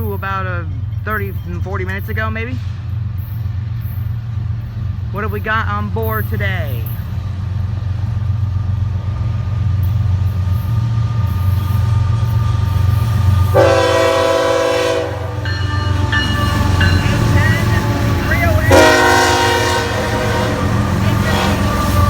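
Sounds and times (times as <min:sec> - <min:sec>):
train rumbling: 0:00.0 - 0:22.0
wheels squealing on rails: 0:09.2 - 0:22.0
train horn blast: 0:13.5 - 0:22.0.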